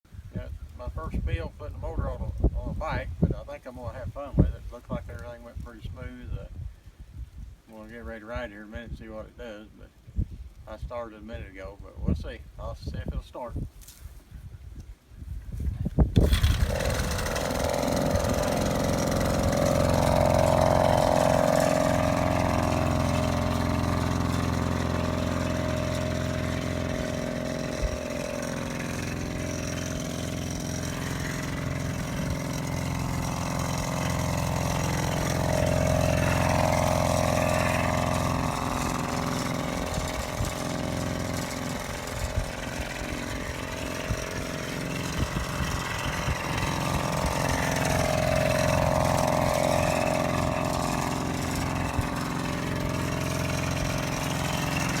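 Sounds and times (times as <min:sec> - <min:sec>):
small engine revving: 0:16.0 - 0:55.0.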